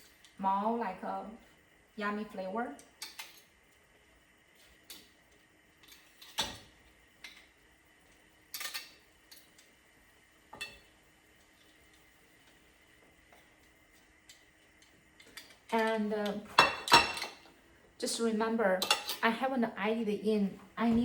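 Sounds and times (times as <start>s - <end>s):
utensil clinking against pot and dishes: 8.5s - 9.6s, 10.6s - 10.9s, 15.2s - 17.5s, 18.8s - 19.2s.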